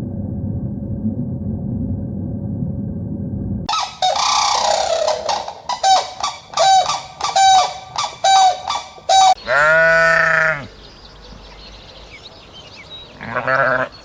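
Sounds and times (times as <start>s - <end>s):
goose honking: 3.7s - 10.7s.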